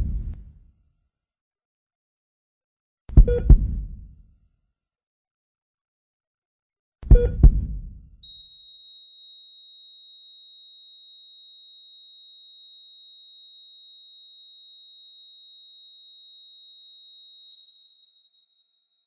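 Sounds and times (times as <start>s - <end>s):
heartbeat thumps: 0.0s - 0.5s, 3.1s - 4.2s, 7.0s - 8.2s.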